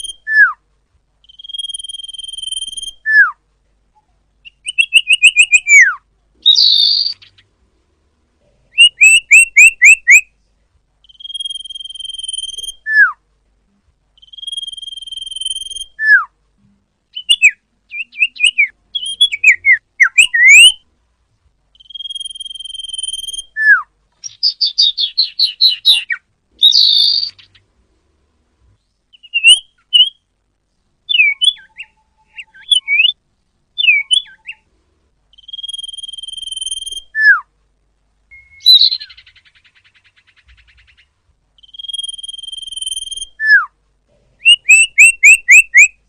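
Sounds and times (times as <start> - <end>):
songbird singing: 0.0 - 20.9, 21.6 - 27.9, 28.6 - 37.5, 38.2 - 46.0.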